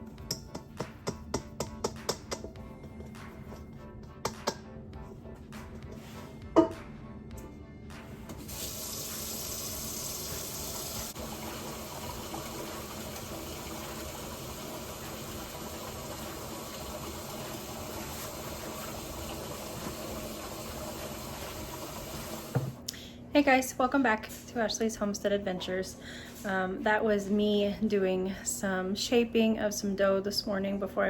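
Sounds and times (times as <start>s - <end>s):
tap water running into sink: 8.3s - 22.8s.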